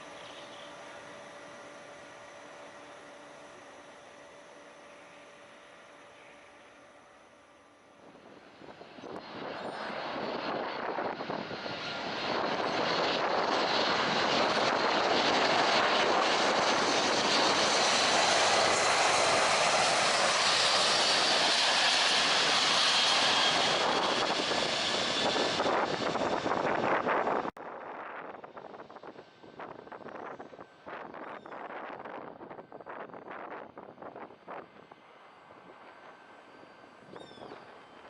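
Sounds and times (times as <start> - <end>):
jet engines whining: 0.0 - 6.8, 8.0 - 27.5.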